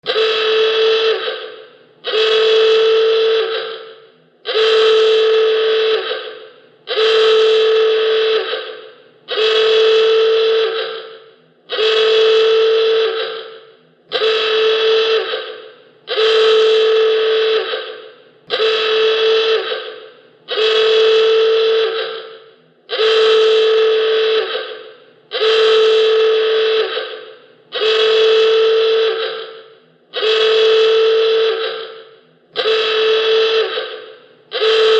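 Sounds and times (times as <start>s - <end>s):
klaxon alarm blasts: 0.0s - 34.9s.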